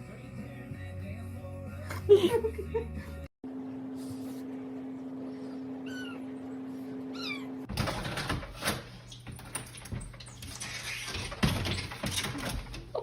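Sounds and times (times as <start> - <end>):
cat meowing: 5.8 - 6.3, 7.1 - 7.7.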